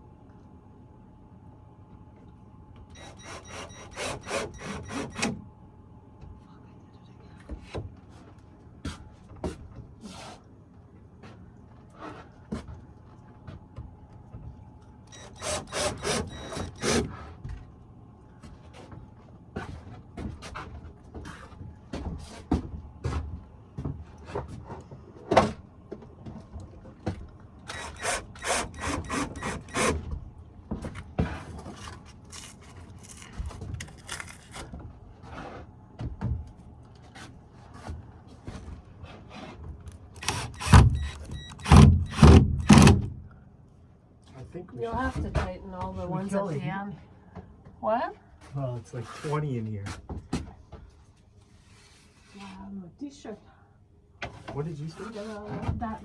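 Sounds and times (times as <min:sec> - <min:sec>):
quick repeated strokes on wood: 0:03.2 - 0:05.1, 0:15.4 - 0:17.0, 0:27.7 - 0:30.0.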